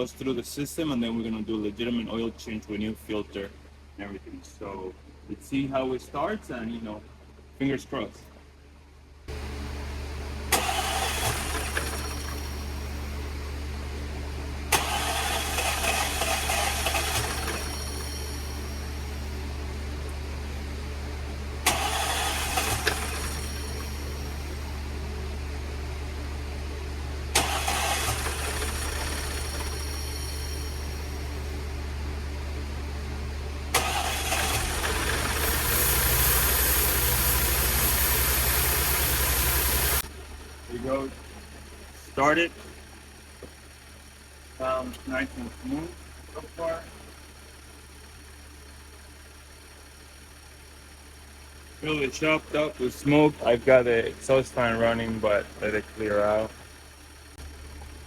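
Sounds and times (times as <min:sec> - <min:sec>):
starter motor cranking engine: 0:10.5 - 0:12.8, 0:14.7 - 0:19.0, 0:21.6 - 0:24.5, 0:27.3 - 0:31.3, 0:33.7 - 0:58.0
steady low hum: 0:37.0 - 0:58.0.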